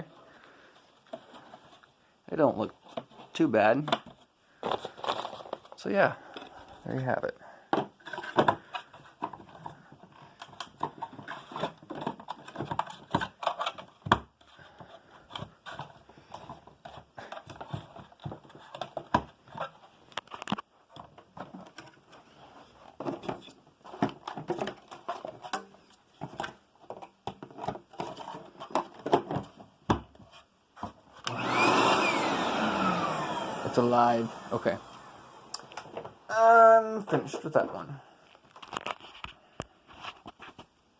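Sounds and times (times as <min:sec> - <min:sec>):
plastic parts clicking and scraping: 0:00.3 - 0:31.6, 0:37.1 - 0:40.7
vacuum motor whining: 0:31.3 - 0:36.0.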